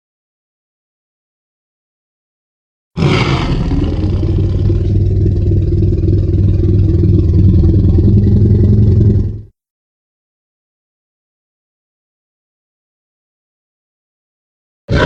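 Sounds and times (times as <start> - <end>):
deep rumbling growl: 3.0 - 9.5.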